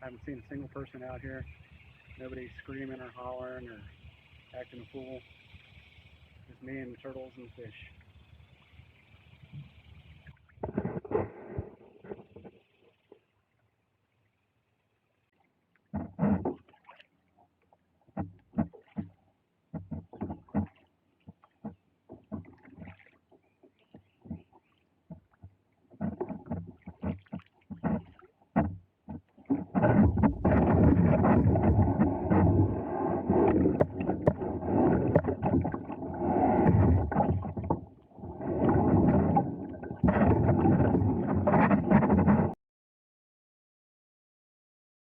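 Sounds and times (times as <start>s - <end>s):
water and hull noise: 0.0s - 42.6s
kayak hull knocks: 25.1s - 35.9s.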